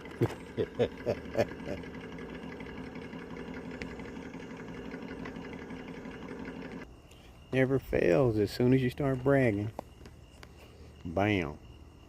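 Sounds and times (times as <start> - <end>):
electric motor whining: 0.0 - 6.8.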